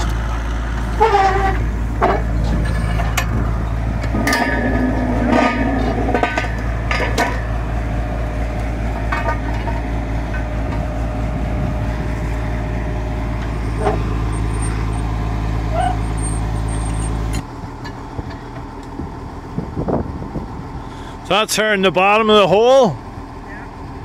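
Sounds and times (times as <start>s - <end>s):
drilling rig engine humming: 0.0s - 24.0s
short squeaks: 0.9s - 3.2s.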